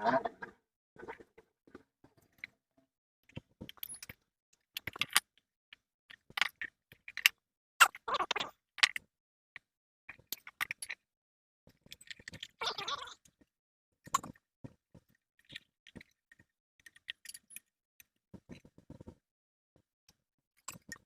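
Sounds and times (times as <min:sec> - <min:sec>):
small hard parts clicking and rattling: 0:03.3 - 0:11.0, 0:11.7 - 0:19.2, 0:19.8 - 0:21.0.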